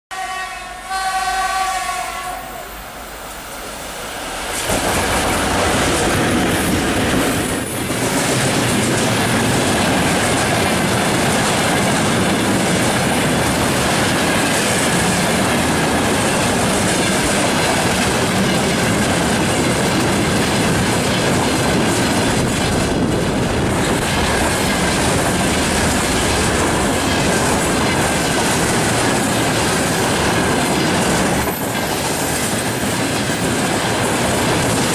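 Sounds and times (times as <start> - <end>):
locomotive horn: 0.1 - 2.7
train wheels rumbling on rails: 0.7 - 34.9.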